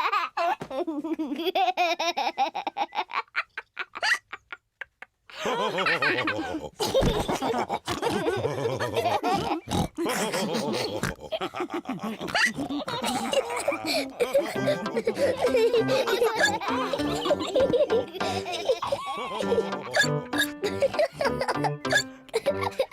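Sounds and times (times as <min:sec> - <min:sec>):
cartoon pigs laughing: 0:00.0 - 0:22.9
snorting oinks: 0:09.3 - 0:10.0.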